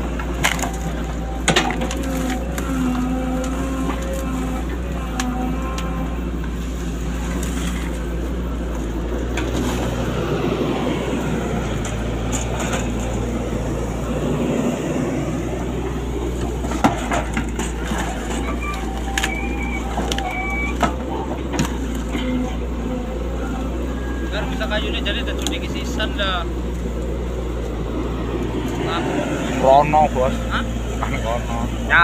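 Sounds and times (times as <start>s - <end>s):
crunching and cracking: 0.0s - 10.1s, 15.6s - 22.7s
excavator diesel engine running: 0.0s - 32.0s.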